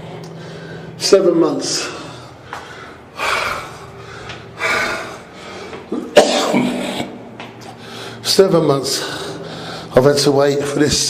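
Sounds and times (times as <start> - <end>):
man breathing heavily: 0.0 - 1.0, 1.8 - 6.1, 6.9 - 8.3, 8.9 - 10.0.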